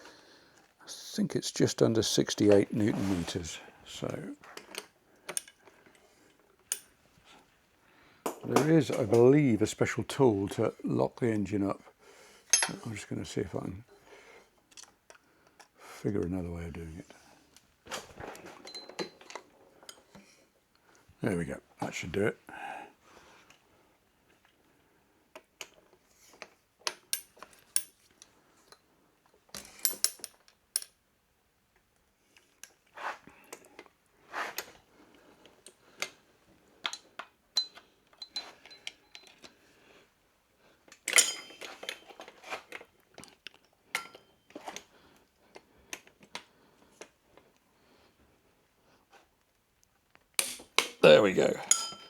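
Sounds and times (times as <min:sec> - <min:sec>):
hand tools clinking on metal: 0:12.5 - 0:13.1, 0:41.0 - 0:42.4, 0:44.0 - 0:44.7, 0:50.4 - 0:52.0.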